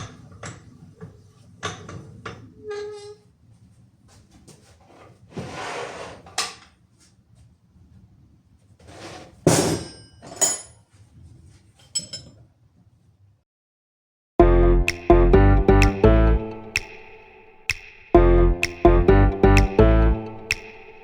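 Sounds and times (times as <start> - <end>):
scrape: 3.6 - 7.5, 8.7 - 9.8
plucked string music: 14.4 - 17.1, 18.2 - 21.0.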